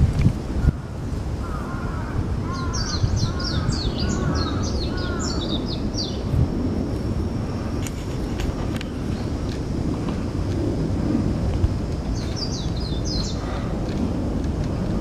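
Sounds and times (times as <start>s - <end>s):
wind rumble on microphone: 0.0s - 15.0s
birds calling: 1.4s - 6.3s, 12.1s - 13.8s.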